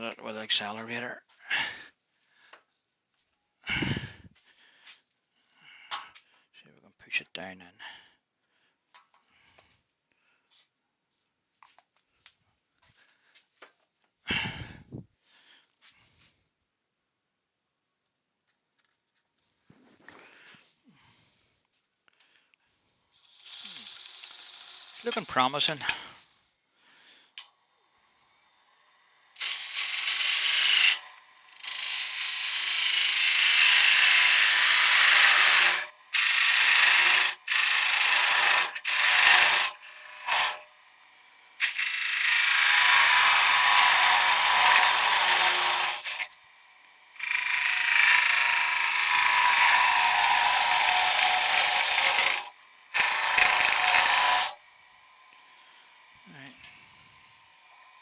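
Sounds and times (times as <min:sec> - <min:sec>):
lathe tool cutting wood: 0:22.9 - 0:26.5, 0:27.4 - 0:58.0.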